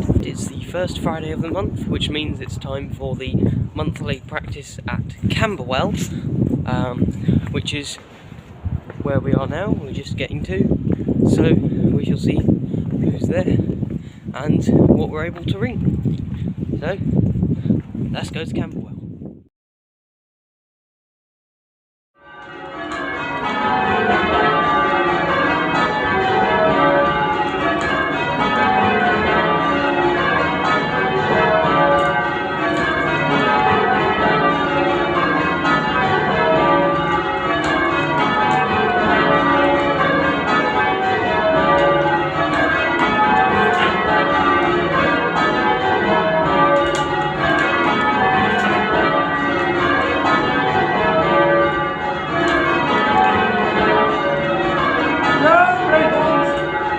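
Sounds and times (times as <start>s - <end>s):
church bells change ringing: 0.0s - 3.8s, 22.2s - 56.9s.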